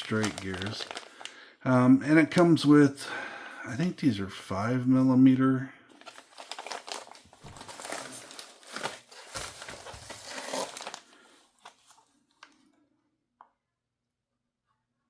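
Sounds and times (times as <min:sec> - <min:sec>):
plastic packaging crinkling: 0:00.0 - 0:01.4, 0:06.0 - 0:12.6.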